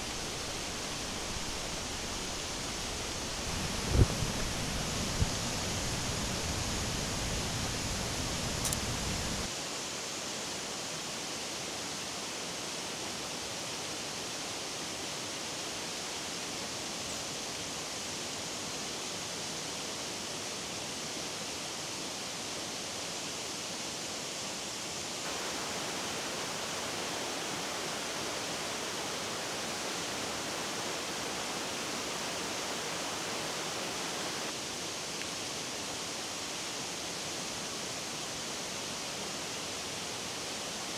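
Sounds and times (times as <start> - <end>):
water rushing: 0.0 - 9.5, 25.3 - 34.6.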